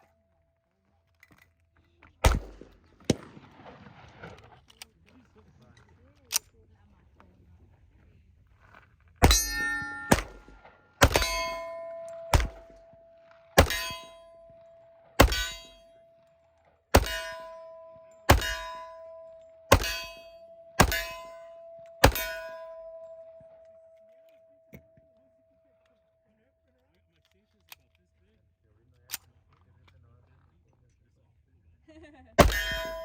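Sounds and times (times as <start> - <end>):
bullets clanging on steel targets: 2.2 - 3.4, 9.2 - 16.3, 16.9 - 24.8, 32.4 - 33.0.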